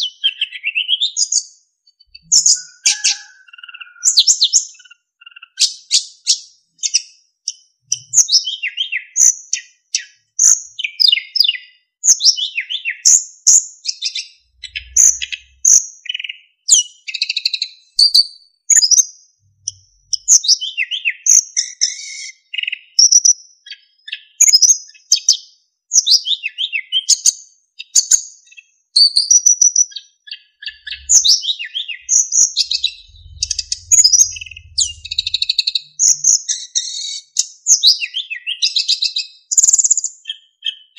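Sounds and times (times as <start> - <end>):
flycatcher singing whistled phrases: 20.2 - 23.8, 27.9 - 40.9.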